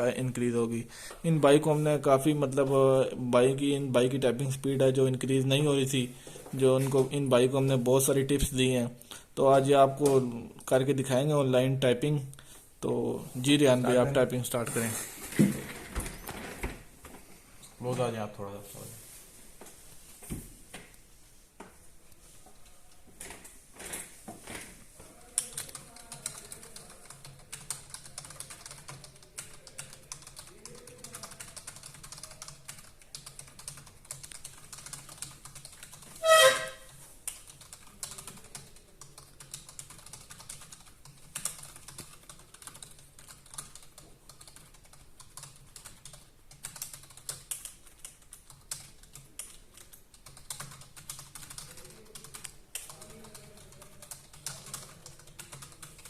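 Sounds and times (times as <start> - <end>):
fast typing on keyboard: 25.2 - 36.2, 36.9 - 56.0
loud pitched tone: 36.2 - 36.9.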